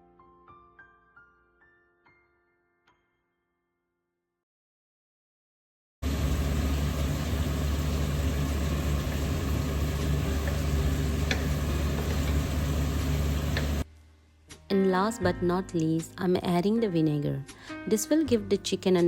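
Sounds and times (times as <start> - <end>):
electric motor humming: 6.0 - 13.8.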